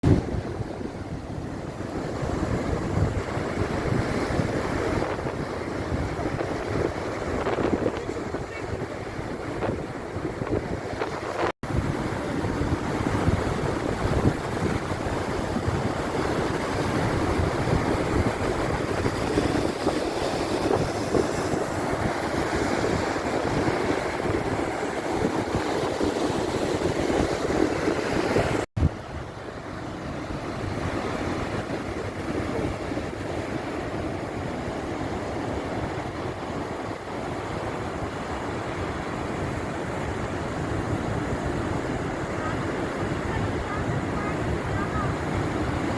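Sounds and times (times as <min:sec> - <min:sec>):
wind buffeting microphone: 0:00.0 - 0:29.4
waves breaking: 0:00.0 - 0:45.9.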